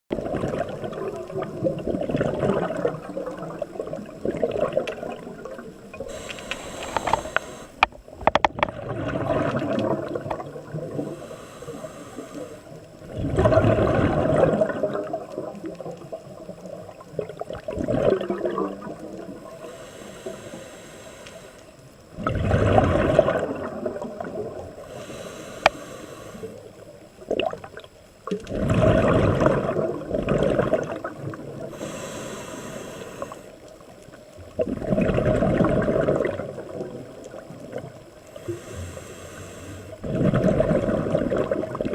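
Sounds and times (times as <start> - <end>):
exhaled bubbles rushing: 0.1 - 6.2, 8.5 - 11.2, 13.0 - 19.6, 22.1 - 24.8, 27.2 - 31.8, 34.4 - 38.1, 40.0 - 41.9
gurgling underwater: 0.1 - 19.9, 22.1 - 25.3, 25.9 - 32.1, 34.3 - 38.7, 39.9 - 41.9.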